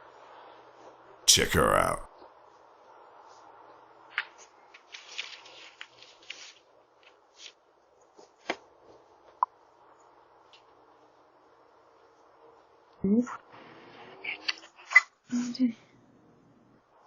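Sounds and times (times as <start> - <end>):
microphone hiss: 1.3 - 2.1.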